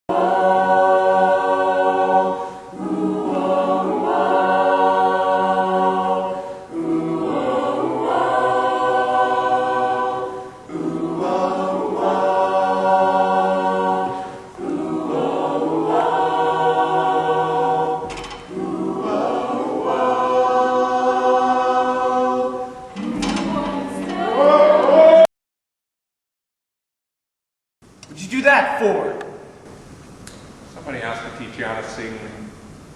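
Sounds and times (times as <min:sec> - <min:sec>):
choir singing a cappella: 0:00.1 - 0:25.3.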